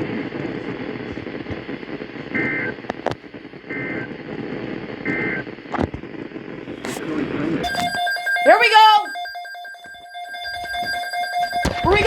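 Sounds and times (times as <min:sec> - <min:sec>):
digital data tone bursts: 0:07.6 - 0:12.0.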